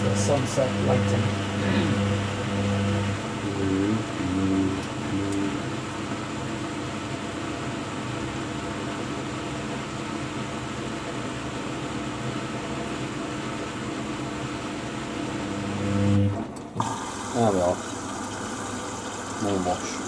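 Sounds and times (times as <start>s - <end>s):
hiss of water running in: 16.8s - 20.0s.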